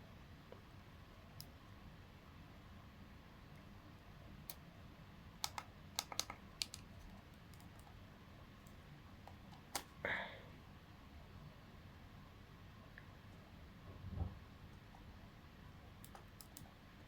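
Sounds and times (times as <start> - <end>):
test equipment clicks: 5.4 - 6.9.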